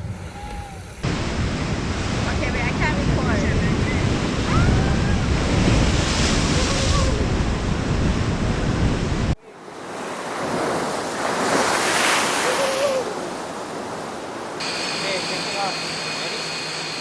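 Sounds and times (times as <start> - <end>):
wind buffeting the microphone: 0.0 - 9.4.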